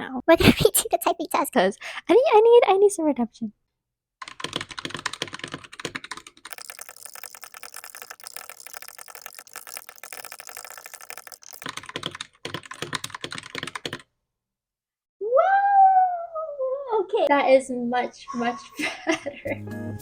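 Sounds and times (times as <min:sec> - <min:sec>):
mechanical keyboard typing: 0:04.2 - 0:14.0.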